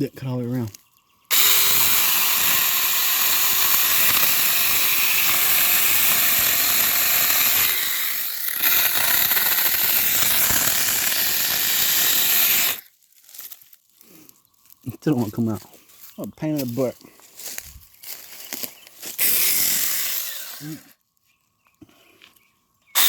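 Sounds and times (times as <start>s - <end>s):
electric chainsaw cutting wood: 1.3s - 12.8s, 19.0s - 20.9s.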